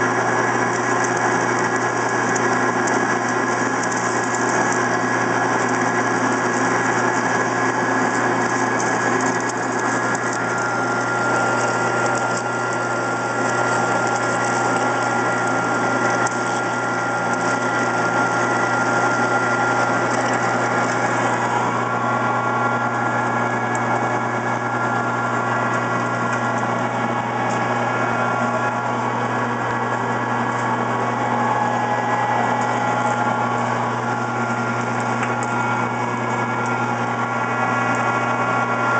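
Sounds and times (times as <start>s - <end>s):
metal lathe motor hum and whine: 0.0s - 38.9s.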